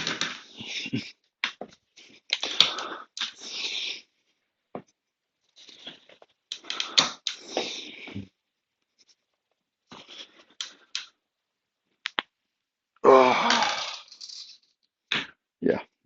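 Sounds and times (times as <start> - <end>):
man breathing heavily: 1.9 - 4.5, 5.6 - 8.3, 9.9 - 11.0.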